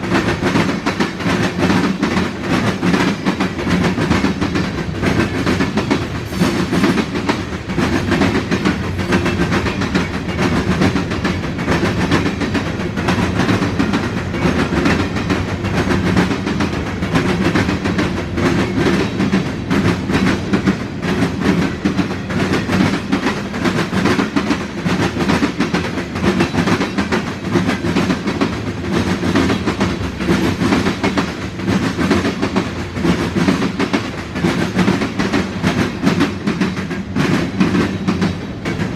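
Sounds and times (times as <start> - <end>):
freight train rumble: 0.0 - 38.9
train wheels clacking over rails: 0.0 - 38.9.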